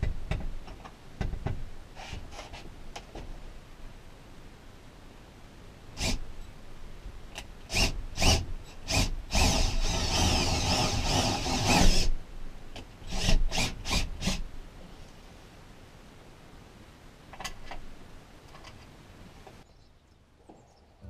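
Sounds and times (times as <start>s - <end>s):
power drill drilling metal: 6.0s - 6.2s, 7.7s - 12.2s, 13.1s - 14.4s.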